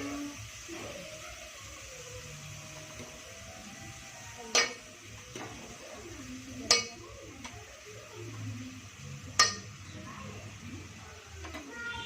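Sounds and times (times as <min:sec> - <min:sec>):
metal utensil clinking against pot: 0:04.4 - 0:05.7, 0:06.6 - 0:07.6, 0:09.3 - 0:09.8.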